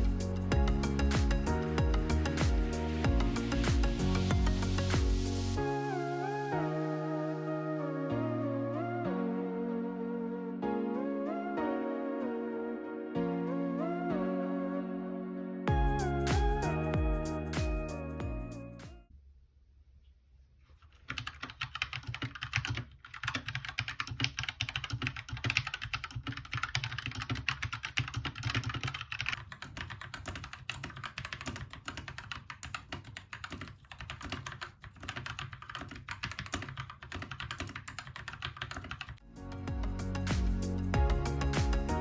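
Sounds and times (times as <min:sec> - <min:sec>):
mechanical keyboard typing: 0:20.8 - 0:39.2.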